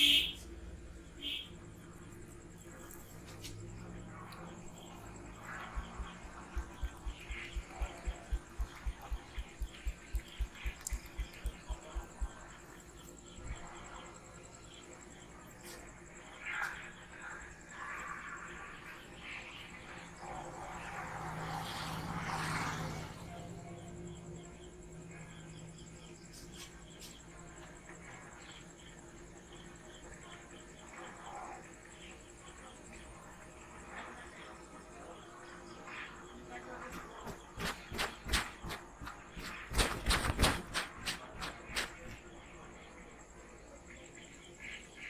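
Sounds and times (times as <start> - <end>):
insect chirping: 0.0 - 45.0
faint sharp clicks: 6.6 - 12.2.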